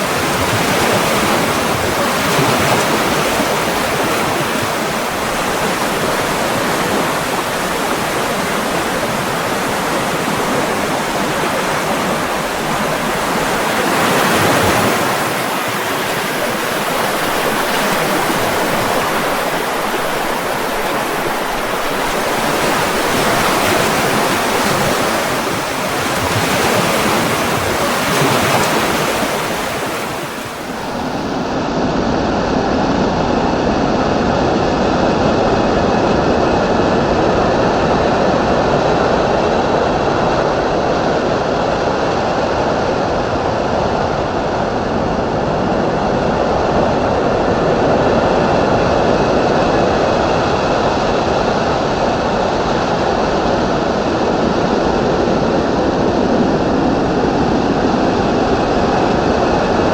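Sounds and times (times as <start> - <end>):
rushing water: 0.0 - 59.9.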